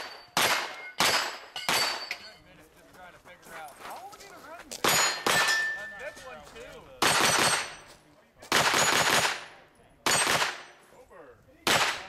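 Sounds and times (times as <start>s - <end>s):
gunshots with echo: 0.0s - 2.1s, 4.8s - 5.8s, 7.0s - 7.9s, 8.5s - 10.8s, 11.6s - 12.0s.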